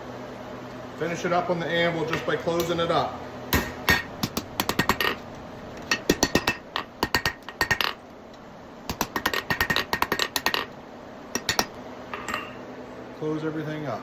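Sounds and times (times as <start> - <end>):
hammer striking steel on anvil: 3.5 - 5.2, 5.8 - 7.9, 11.4 - 12.6.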